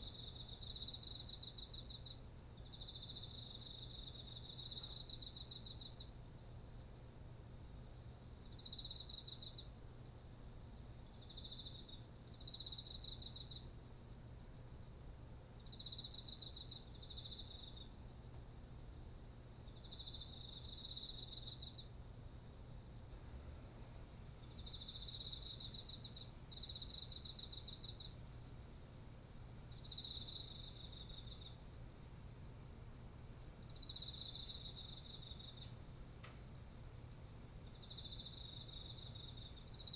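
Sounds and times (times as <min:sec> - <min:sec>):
continuous high insect trill: 0:00.0 - 0:39.9
insect chirping phrases: 0:22.7 - 0:31.5, 0:33.3 - 0:35.8.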